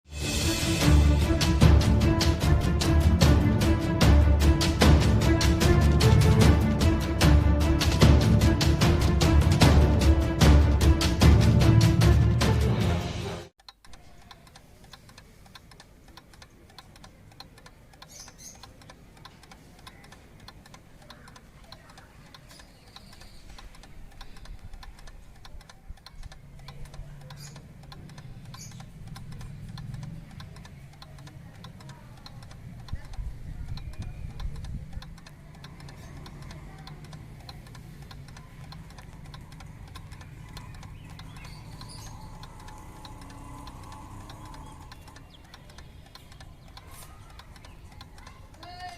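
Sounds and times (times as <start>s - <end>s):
alarm clock ticking: 13.6s - 48.9s.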